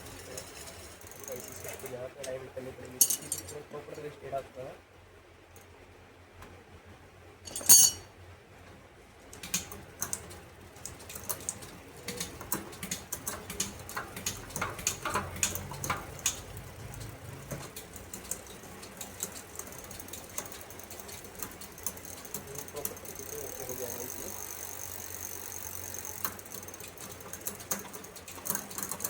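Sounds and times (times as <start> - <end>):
metallic clicking and clinking: 0.2 - 3.6, 7.5 - 8.1, 9.3 - 24.7, 25.5 - 29.0
sharp loud metal clink: 7.5 - 8.1.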